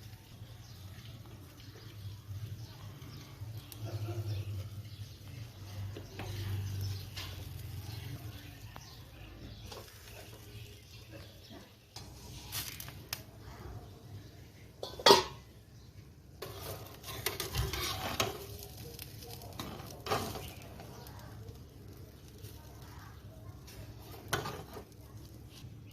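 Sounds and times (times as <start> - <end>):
utensils clinking against dishes: 14.8 - 15.5.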